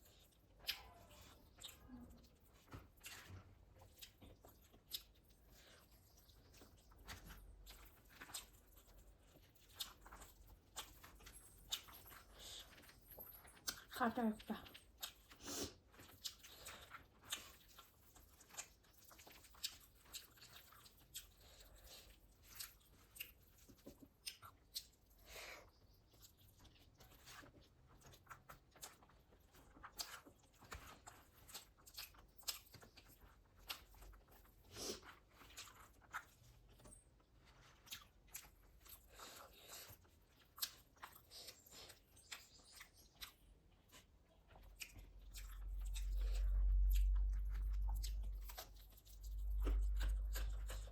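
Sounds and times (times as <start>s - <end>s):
food crunching: 0.0s - 14.0s, 14.6s - 25.2s, 26.0s - 50.9s
person chewing food: 0.0s - 50.9s
wet mouth clicks: 44.6s - 50.9s.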